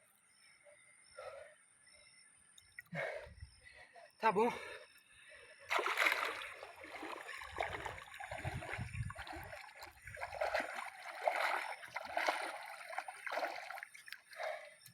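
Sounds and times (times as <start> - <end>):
water splashing from swimming: 5.7 - 14.9.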